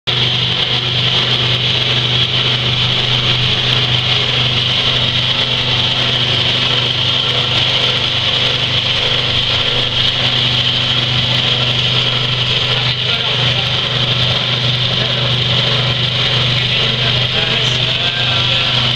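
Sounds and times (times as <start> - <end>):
vibrating sieve machine running: 0.1 - 18.9.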